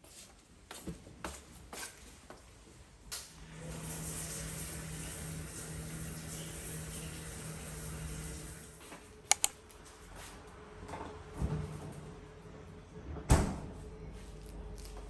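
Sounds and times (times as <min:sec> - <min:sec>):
sharp clicks: 0:09.3 - 0:09.5.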